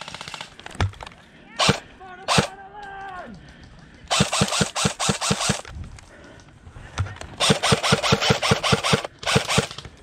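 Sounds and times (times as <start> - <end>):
airsoft gun automatic bursts: 0.0 - 0.6, 1.6 - 2.5, 4.1 - 5.7, 7.4 - 9.9.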